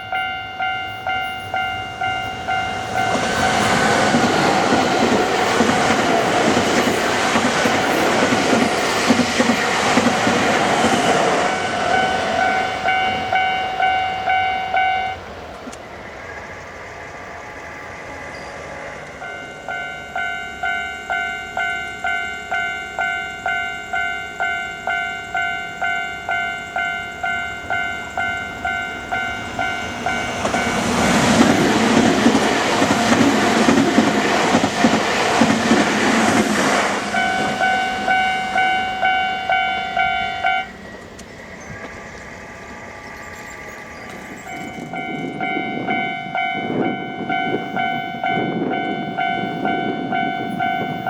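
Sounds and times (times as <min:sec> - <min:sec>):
train passing over crossing: 0:00.0 - 0:51.0
level crossing electronic bell: 0:12.0 - 0:15.2.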